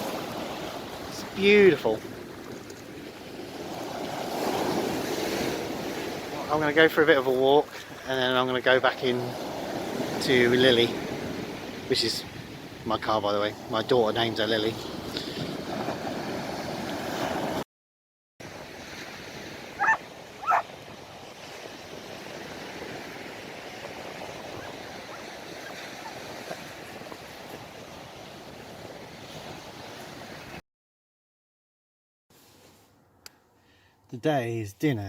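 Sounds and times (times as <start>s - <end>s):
sea waves washing onto beach: 0.0s - 17.6s, 18.4s - 30.6s
short loud animal calls: 19.8s - 20.6s.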